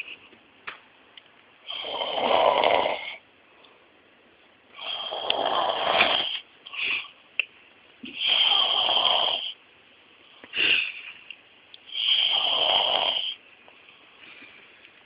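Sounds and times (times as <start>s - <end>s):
person snoring: 1.6s - 3.2s, 4.8s - 7.0s, 8.1s - 9.6s, 11.9s - 13.4s.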